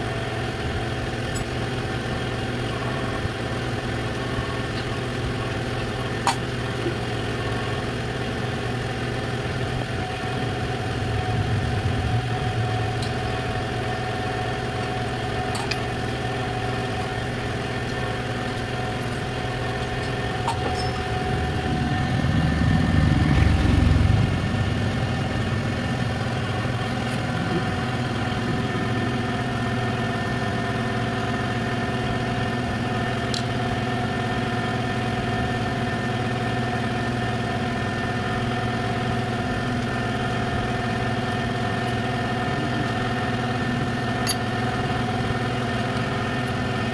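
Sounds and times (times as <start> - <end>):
engine running steadily: 0.0 - 46.9
sharp metallic clicks: 15.5 - 15.9, 44.2 - 44.5.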